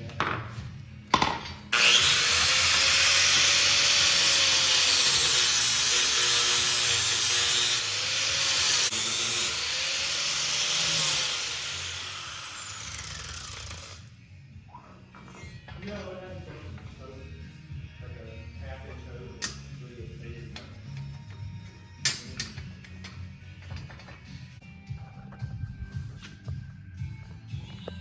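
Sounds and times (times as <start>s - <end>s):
power tool motor whine: 1.7s - 14.0s.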